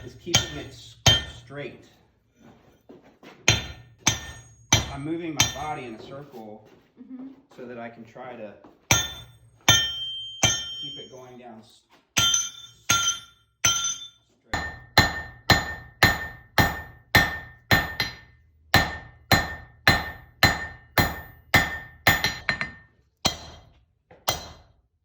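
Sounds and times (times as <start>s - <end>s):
hammer striking hot iron on anvil: 0.0s - 1.5s, 3.5s - 6.0s, 8.9s - 11.3s, 12.2s - 24.8s.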